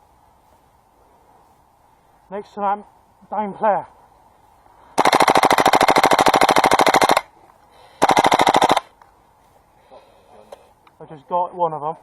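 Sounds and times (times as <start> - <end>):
airsoft rifle firing bursts: 5.0 - 7.3, 8.0 - 8.9.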